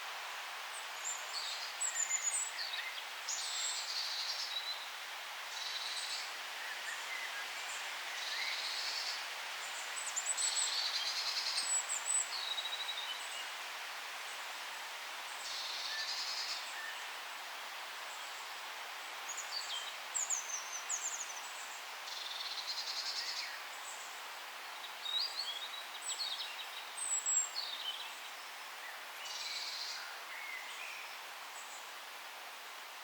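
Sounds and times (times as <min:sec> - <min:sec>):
steady background hiss: 0:00.0 - 0:33.0
songbirds singing: 0:00.7 - 0:13.6, 0:19.2 - 0:32.0.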